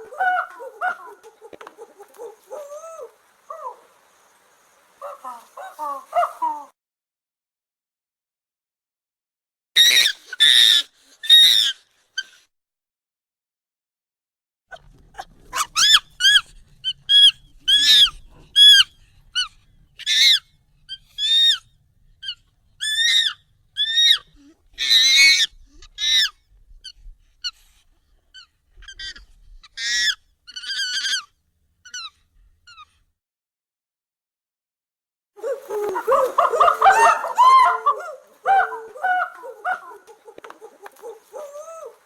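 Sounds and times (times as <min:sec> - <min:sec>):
high-pitched monkey calls: 0:09.8 - 0:12.4, 0:15.2 - 0:27.6, 0:28.4 - 0:33.0, 0:35.4 - 0:42.0.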